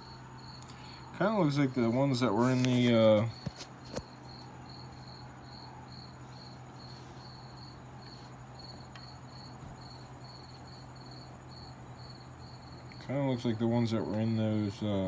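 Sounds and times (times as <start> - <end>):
cricket chirping: 0.0 - 1.7, 3.3 - 13.5
steady low hum: 0.0 - 15.0.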